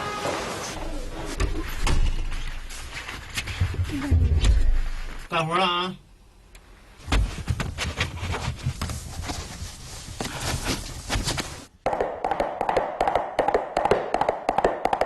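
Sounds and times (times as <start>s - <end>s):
knocks and taps by hand: 11.9s - 15.0s.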